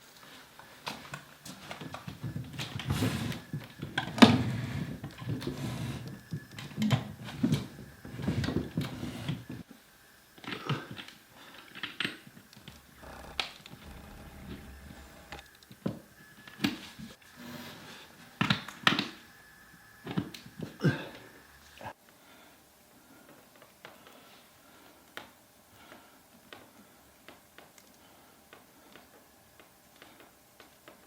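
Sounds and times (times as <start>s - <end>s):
rustling and handling noise: 0.0s - 9.7s.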